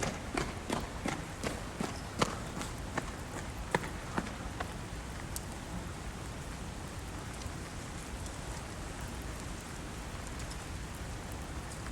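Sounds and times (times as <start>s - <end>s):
running footfalls: 0.0s - 4.8s
rain falling: 0.0s - 11.9s.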